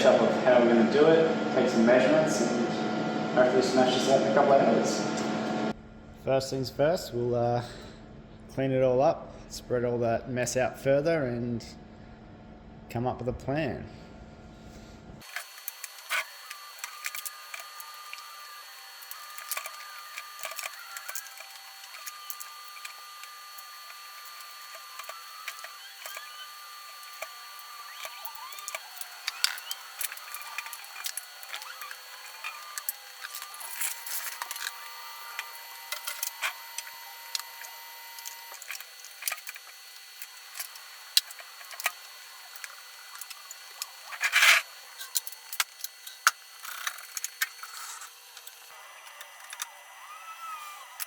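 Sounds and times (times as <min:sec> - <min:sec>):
faint whine: 0:11.6 - 0:51.0
small tools clicking and rattling: 0:15.2 - 0:49.7.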